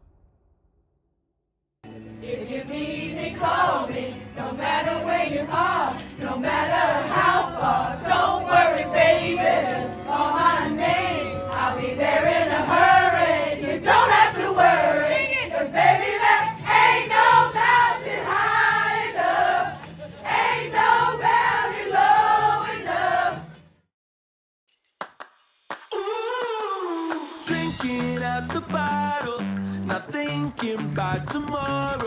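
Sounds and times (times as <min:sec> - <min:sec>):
group of voices singing: 0:02.2 - 0:23.6.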